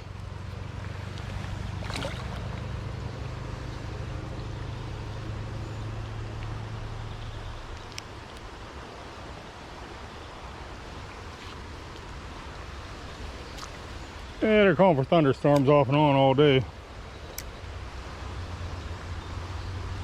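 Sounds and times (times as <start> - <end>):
low rumble: 0.0 - 8.9
creek rushing: 0.0 - 20.0.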